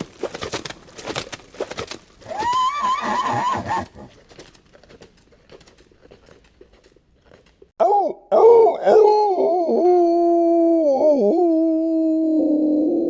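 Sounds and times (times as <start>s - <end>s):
horse whinnying: 2.2s - 4.1s.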